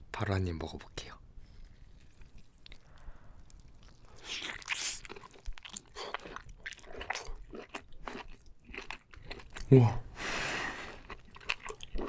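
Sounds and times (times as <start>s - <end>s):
crunchy chewing clicks: 1.6s - 9.7s, 11.0s - 12.0s
person biting and chewing: 1.8s - 9.7s, 10.8s - 12.0s.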